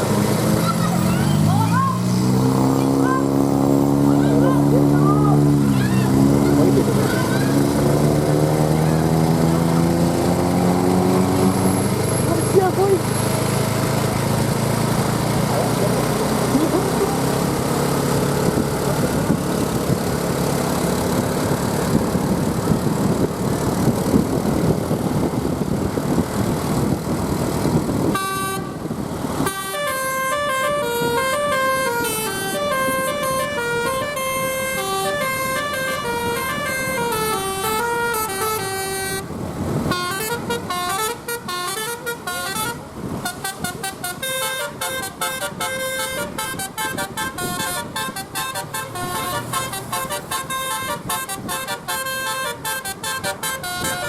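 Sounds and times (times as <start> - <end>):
engine and street noise: 0.0 - 54.0
bus air horns playing melody: 28.0 - 54.0.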